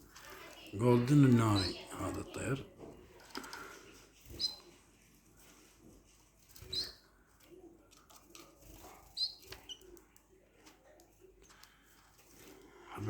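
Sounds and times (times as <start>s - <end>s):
faint ticks and rustles: 0.0s - 13.0s
finches chirping: 0.2s - 2.6s, 4.2s - 4.7s, 6.6s - 7.1s, 9.0s - 10.0s.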